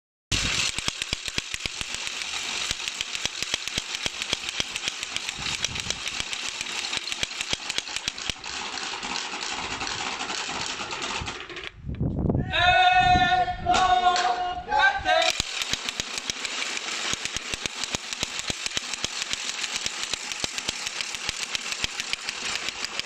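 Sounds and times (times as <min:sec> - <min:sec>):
wooden rattles clattering: 0:00.4 - 0:11.8.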